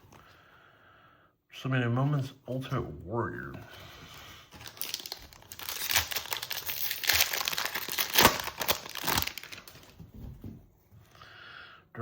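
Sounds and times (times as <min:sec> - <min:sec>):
foil wrapper crackling: 0:04.5 - 0:10.0.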